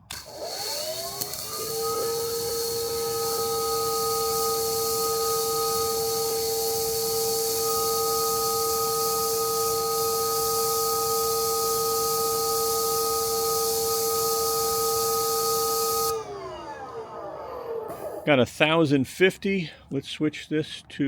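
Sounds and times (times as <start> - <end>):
pressure washer motor whine: 0.0 - 18.3
water jet hissing: 1.4 - 16.1.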